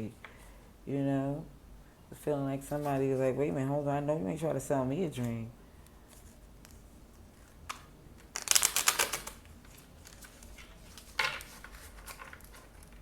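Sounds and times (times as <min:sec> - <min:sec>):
card rustle: 0:06.1 - 0:13.0
cards being shuffled: 0:07.4 - 0:13.0.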